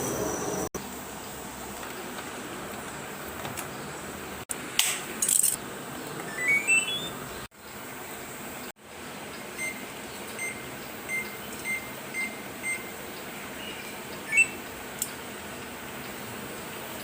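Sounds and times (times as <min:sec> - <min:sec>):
washing machine button beeps: 0:06.3 - 0:07.1, 0:09.6 - 0:09.8, 0:10.4 - 0:12.9
rising electronic chirp: 0:06.3 - 0:07.4, 0:09.5 - 0:13.0.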